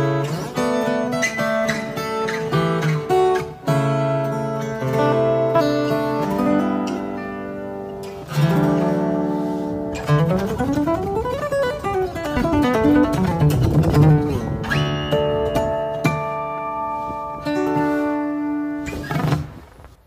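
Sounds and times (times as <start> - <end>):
acoustic guitar strummed chords: 0.0 - 19.7
plucked guitar notes run: 9.9 - 19.5.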